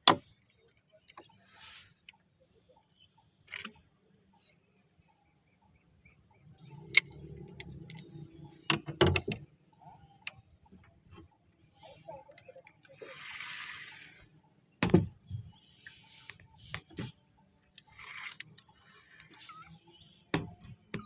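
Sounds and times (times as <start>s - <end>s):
sharp clicks and knocks: 6.9s - 9.5s, 20.3s - 21.0s.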